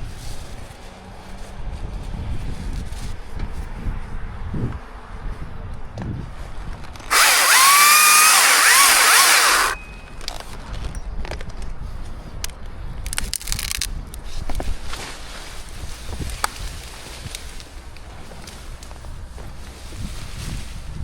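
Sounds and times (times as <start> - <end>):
chainsaw revving: 7.1 - 9.8
rustling: 7.1 - 9.8.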